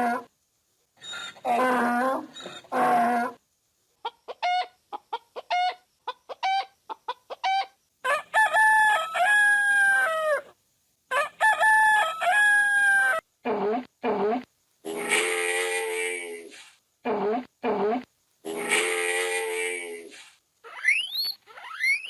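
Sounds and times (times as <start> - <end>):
chickens clucking: 4.0 - 7.7
rooster crowing: 8.0 - 10.5, 11.1 - 13.2.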